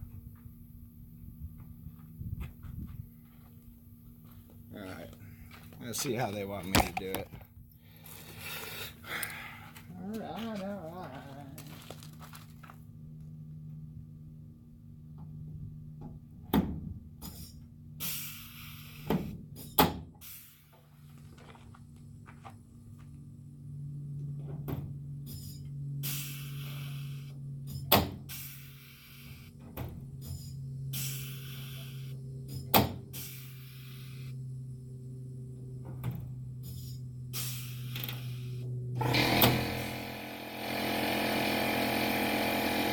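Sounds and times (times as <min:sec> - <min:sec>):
steady low hum: 0:00.0 - 0:42.9
pneumatic rivet gun air hiss: 0:17.2 - 0:20.7, 0:25.3 - 0:29.5, 0:30.4 - 0:34.3, 0:36.6 - 0:40.0.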